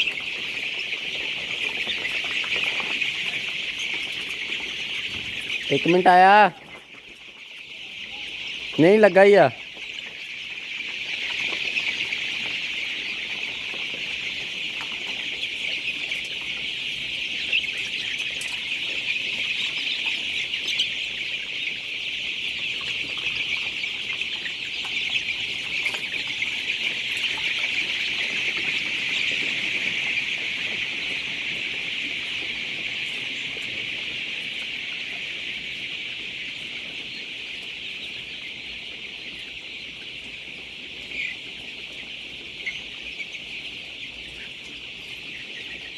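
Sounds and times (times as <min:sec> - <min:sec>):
chickens calling: 0:00.0 - 0:45.9.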